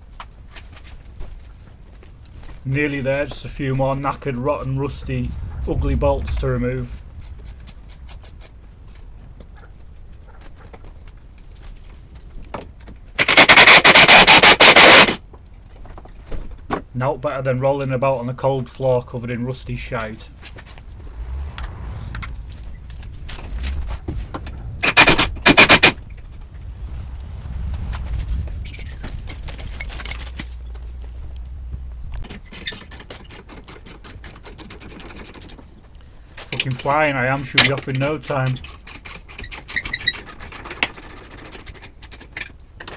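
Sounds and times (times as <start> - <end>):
low rumble: 1.7 - 10.4, 19.2 - 32.4
hand ratchet clicking: 13.2 - 15.2.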